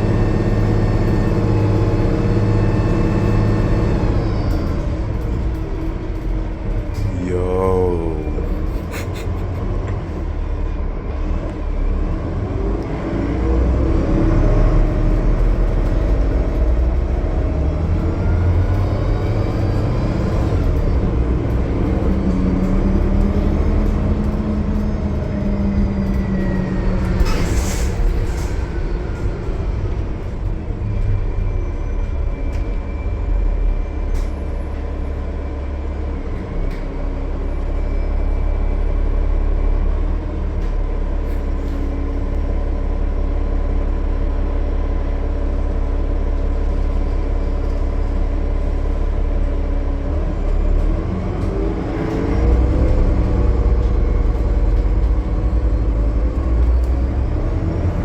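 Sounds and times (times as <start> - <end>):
diesel bus engine running: 0.0 - 58.0.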